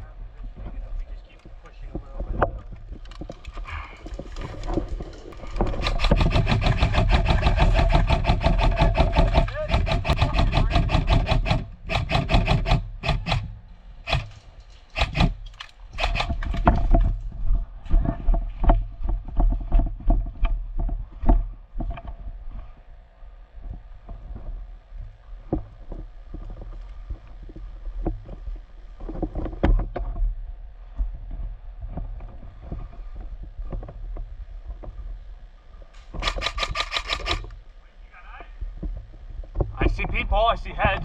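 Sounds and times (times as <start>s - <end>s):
airsoft guns firing: 5.6s - 14.4s, 15.0s - 16.6s, 36.2s - 37.5s.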